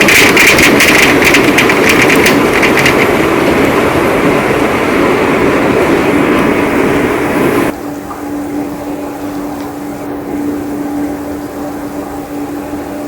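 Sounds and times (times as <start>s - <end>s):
clicks of close raindrops: 0.0s - 3.2s
heavy rain falling: 0.0s - 7.7s.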